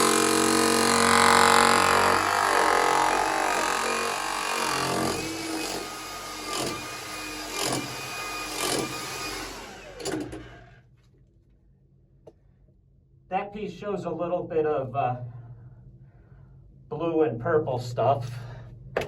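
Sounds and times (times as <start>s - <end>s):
demolition hammer chiselling rock: 0.0s - 10.4s
motor hum: 0.0s - 10.8s.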